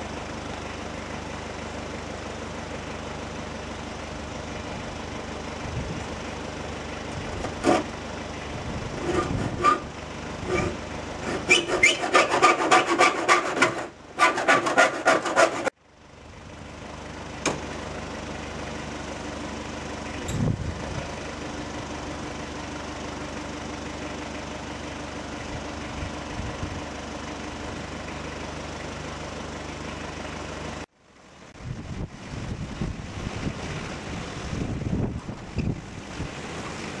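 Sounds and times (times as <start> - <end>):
rapid sawing strokes: 8.9 - 15.8.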